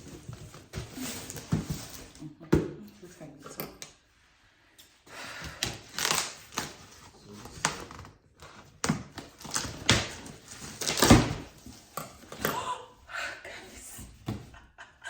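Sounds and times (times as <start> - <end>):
cardboard packaging rustling: 5.8 - 12.4.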